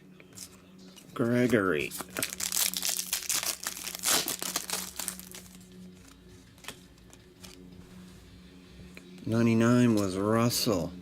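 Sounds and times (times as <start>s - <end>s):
card pack wrapper crinkling: 1.9s - 6.8s.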